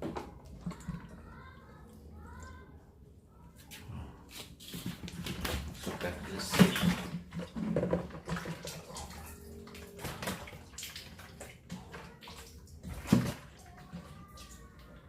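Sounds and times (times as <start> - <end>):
water splashing and sloshing: 0.0 - 15.0.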